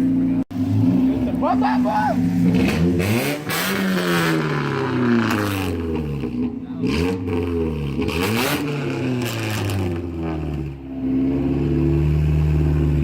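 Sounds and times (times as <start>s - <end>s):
car engine idling and revving: 0.0s - 13.0s.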